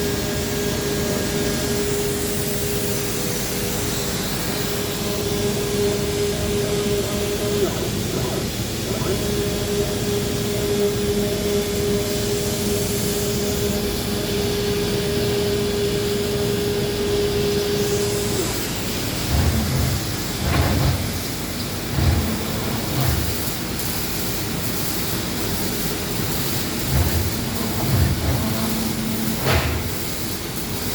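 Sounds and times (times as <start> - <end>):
plasma cutter hiss: 0.0 - 30.9
steady whine: 16.7 - 23.7, 26.2 - 30.6.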